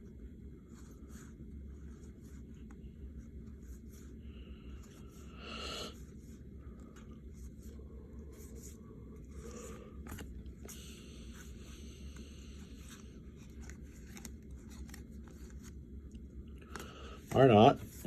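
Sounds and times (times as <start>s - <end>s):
steady low hum: 0.0s - 18.0s
cards sliding and clicking: 8.4s - 15.8s.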